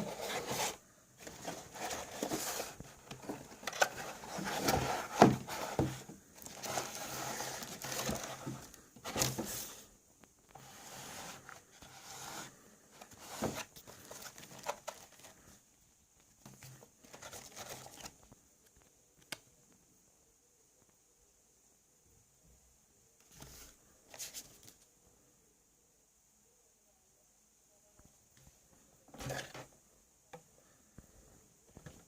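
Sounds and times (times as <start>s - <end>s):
plastic and cardboard rustling: 0.0s - 9.9s, 10.5s - 15.6s, 16.3s - 18.4s, 29.1s - 29.7s.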